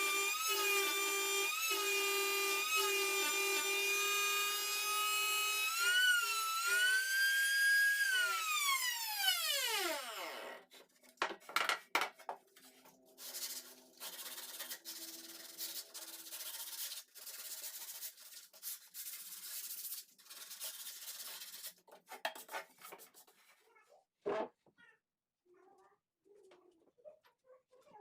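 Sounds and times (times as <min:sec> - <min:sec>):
sandpaper rubbing on wood: 0:13.1 - 0:21.8.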